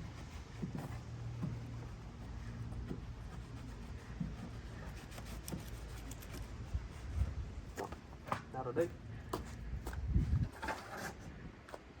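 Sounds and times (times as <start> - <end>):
hand rubbing and scraping: 0.0 - 8.0.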